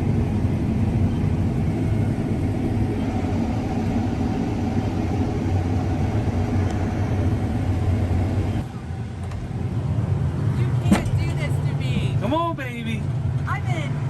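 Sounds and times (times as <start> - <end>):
vehicle engine running: 0.0 - 14.0.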